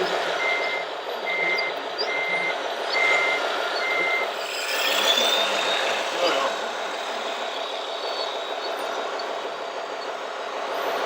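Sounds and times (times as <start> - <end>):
reversing alarm beeps: 0.3 - 6.4
model motors and gears running: 2.5 - 11.0
rising whine: 3.1 - 11.0.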